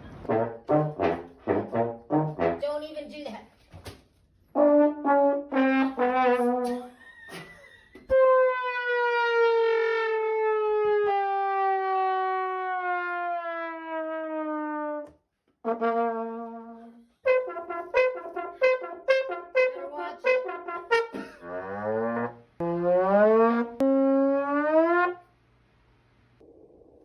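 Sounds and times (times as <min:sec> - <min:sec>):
brass horn notes: 0:00.0 - 0:02.8, 0:04.5 - 0:07.0, 0:08.1 - 0:25.3.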